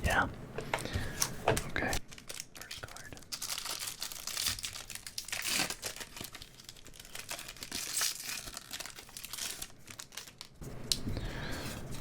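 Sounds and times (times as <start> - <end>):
foil wrapper crinkling: 2.0 - 10.6.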